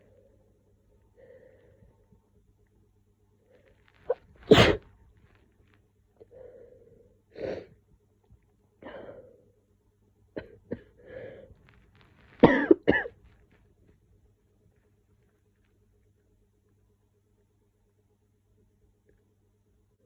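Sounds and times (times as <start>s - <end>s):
woman sneezing: 4.1s - 4.8s
woman coughing: 4.5s - 4.8s, 12.4s - 13.1s.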